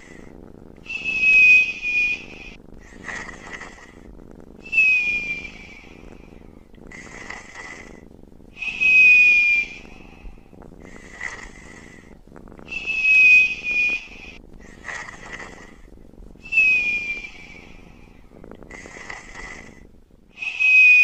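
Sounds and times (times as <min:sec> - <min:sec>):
man snoring with whistle: 0:00.8 - 0:04.0, 0:04.7 - 0:06.1, 0:08.6 - 0:10.2, 0:12.7 - 0:15.7, 0:16.5 - 0:17.8, 0:20.4 - 0:21.0.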